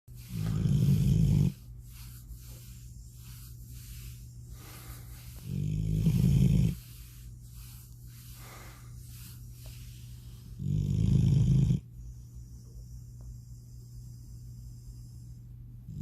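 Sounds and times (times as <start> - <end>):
quiet breathing: 0.1 - 16.0
deep rattling snores: 0.4 - 1.5, 5.5 - 6.8, 10.6 - 11.8.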